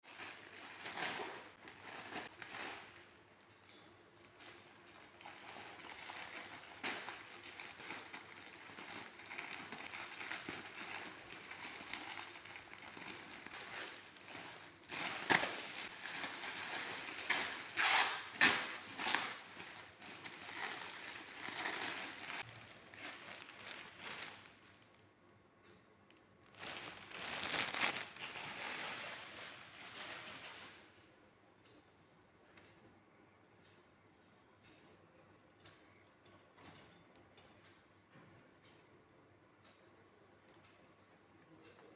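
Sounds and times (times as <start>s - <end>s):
plastic packaging crinkling: 0.0s - 3.1s, 4.4s - 24.9s, 26.4s - 30.9s.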